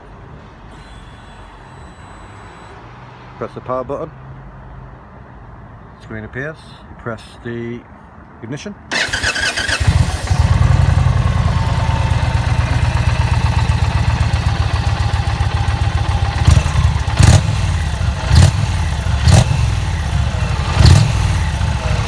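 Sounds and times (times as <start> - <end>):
engine revving: 8.9 - 22.0
motorcycle engine idling: 8.9 - 22.0
motorcycle starter cranking: 8.9 - 22.0.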